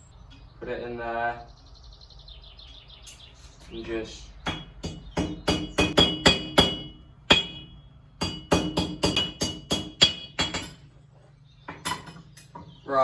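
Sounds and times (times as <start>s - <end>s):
hammer ringing on anvil: 4.5s - 10.8s.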